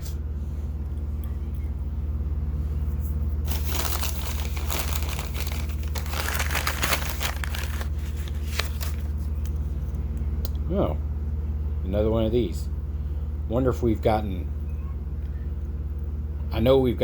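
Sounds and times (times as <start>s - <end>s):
steady low hum: 0.0s - 17.0s
plastic packaging crinkling: 3.4s - 9.5s.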